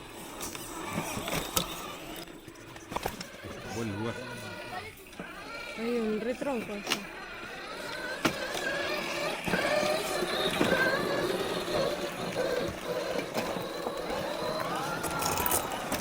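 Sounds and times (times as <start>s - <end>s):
rc truck motor whining: 0.0s - 16.0s
truck knocking over terrain: 8.1s - 16.0s.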